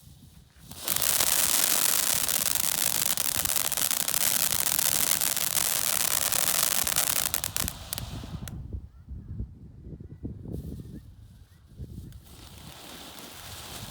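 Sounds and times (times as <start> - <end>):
firework crackling pops: 0.0 - 8.7, 12.0 - 13.9
firework fountain hissing: 0.6 - 8.6, 12.2 - 13.9.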